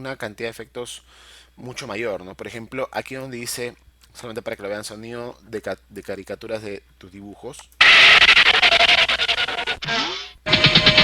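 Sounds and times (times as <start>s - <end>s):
rapid pulsing cartoon effect: 7.8s - 11.0s.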